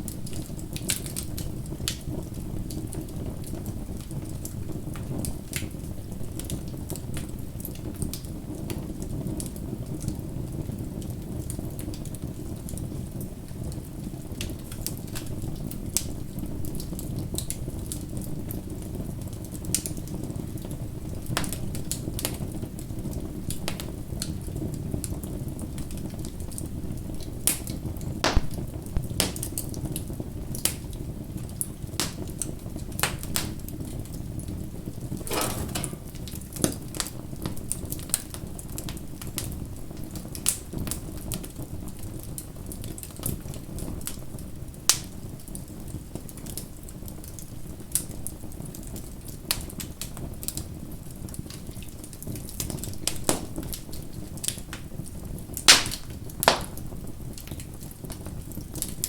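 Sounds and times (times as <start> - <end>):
wood bonfire crackling: 0.1 - 34.6, 35.2 - 36.8, 37.4 - 59.0
sharp pops of burning wood: 28.3 - 28.6, 35.2 - 36.3, 55.7 - 57.0.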